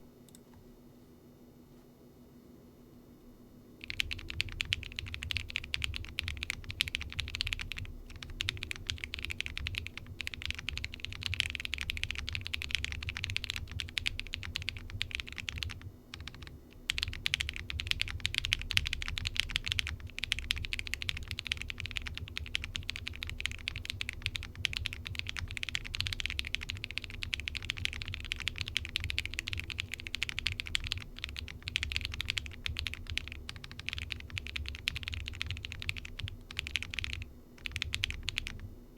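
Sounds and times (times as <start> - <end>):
typing on mechanical keyboard: 3.8 - 38.7.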